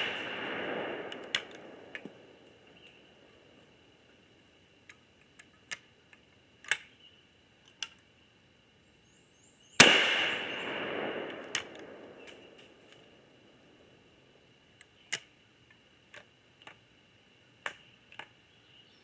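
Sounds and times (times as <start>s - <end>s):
loud echoing gunshot: 0.0s - 2.4s, 9.8s - 12.6s
gun handling clicks: 0.0s - 3.0s, 4.8s - 6.9s, 7.6s - 8.1s, 9.8s - 13.1s, 14.8s - 15.3s.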